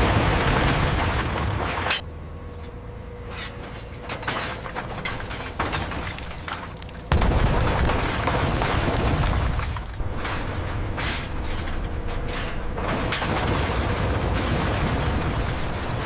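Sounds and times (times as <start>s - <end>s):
scrap steel crashing: 3.3s - 16.0s.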